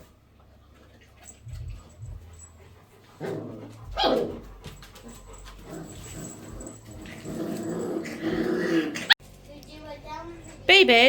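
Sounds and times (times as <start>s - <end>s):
soft dog sound: 0.0s - 8.4s
dog barking: 4.0s - 4.4s.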